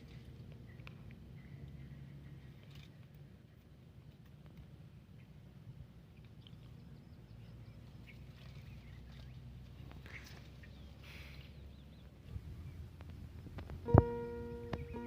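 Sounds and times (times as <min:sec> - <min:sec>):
low background rumble: 0:00.0 - 0:15.0
high bird chirps: 0:13.9 - 0:15.0.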